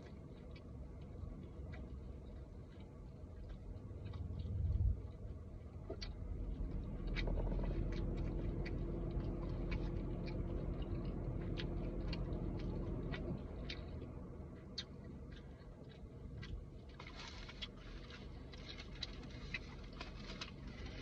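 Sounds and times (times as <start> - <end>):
low car interior hum: 0.0 - 21.0
low rumble: 0.0 - 21.0
person chewing: 0.0 - 21.0.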